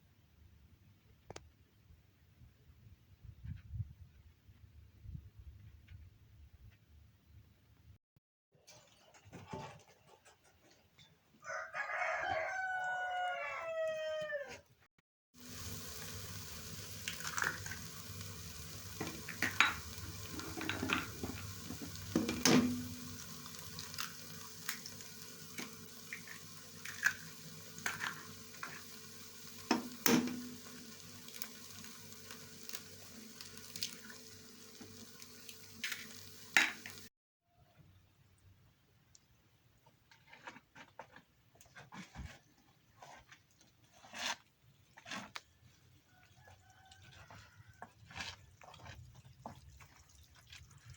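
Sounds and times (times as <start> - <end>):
rooster crowing: 11.4 - 14.6, 46.2 - 47.9
food sizzling in a pan: 15.4 - 37.1.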